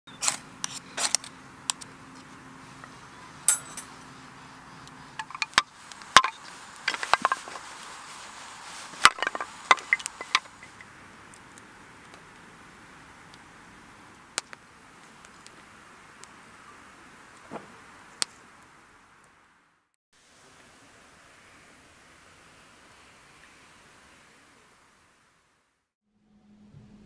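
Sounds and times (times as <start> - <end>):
steady hiss: 0.2 - 19.6, 20.2 - 25.7
low hum: 26.1 - 27.0.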